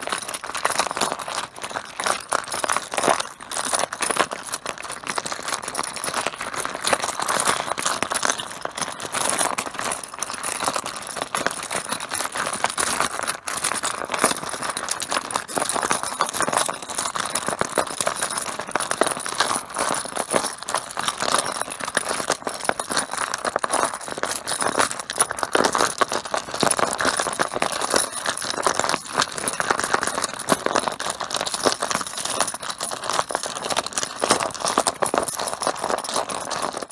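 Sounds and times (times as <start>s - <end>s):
mahjong tiles clattering: 25.9s - 36.8s.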